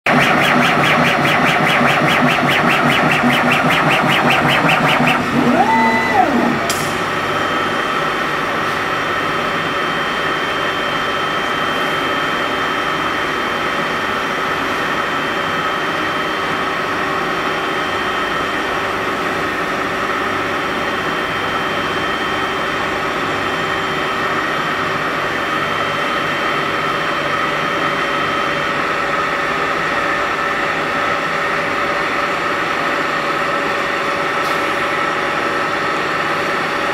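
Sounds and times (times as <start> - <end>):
machine pulsing: 0.0 - 8.6
machine whine: 0.0 - 16.7
fans and motors humming: 0.1 - 36.9.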